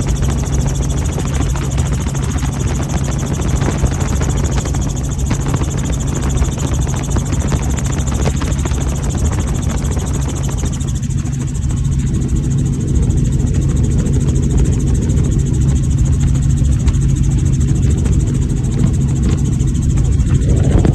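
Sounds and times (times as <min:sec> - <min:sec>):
small aircraft engine droning: 0:00.0 - 0:20.9.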